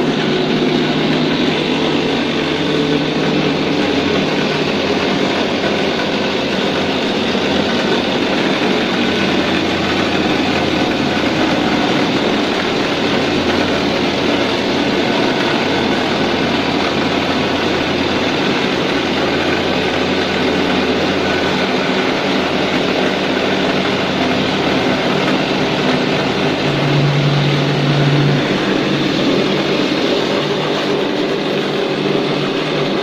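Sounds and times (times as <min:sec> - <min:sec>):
deep hum: 0:00.0 - 0:33.0
plastering machine droning: 0:00.0 - 0:33.0.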